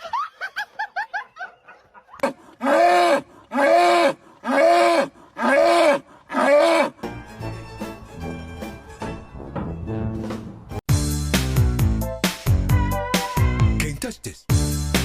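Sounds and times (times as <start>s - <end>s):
farm animal calling loudly: 2.2s - 6.9s
music: 7.0s - 15.0s.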